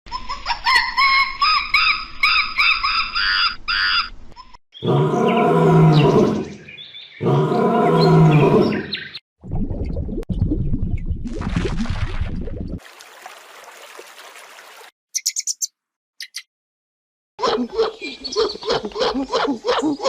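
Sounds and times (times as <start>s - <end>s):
deep loud animal calls: 4.8s - 6.6s, 7.2s - 9.1s
rough noisy animal call: 4.8s - 6.6s, 7.2s - 9.0s
animal chirping calls: 15.2s - 16.4s, 17.4s - 20.0s.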